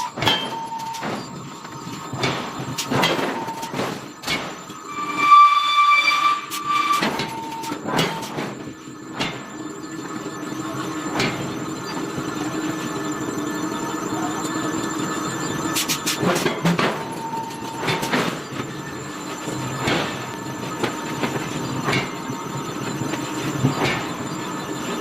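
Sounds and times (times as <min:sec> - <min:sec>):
high metallic ringing squeal: 0:00.0 - 0:02.2, 0:03.1 - 0:12.0
machinery hum: 0:00.0 - 0:25.0
metal clanks from forging: 0:00.1 - 0:01.2.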